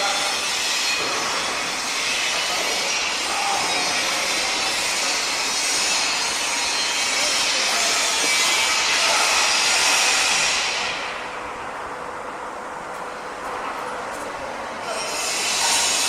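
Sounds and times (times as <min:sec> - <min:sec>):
machine cutting hiss: 0:15.1 - 0:16.0.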